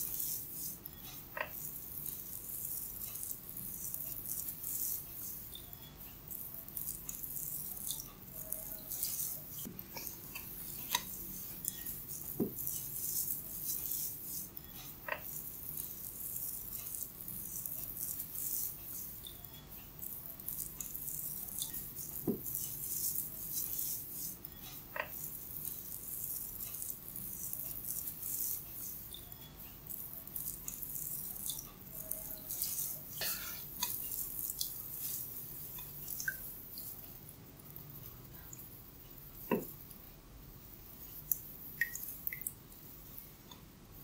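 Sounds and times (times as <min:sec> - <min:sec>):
hair crackling and rustling: 0:00.0 - 0:14.6, 0:25.1 - 0:29.1, 0:29.9 - 0:37.0.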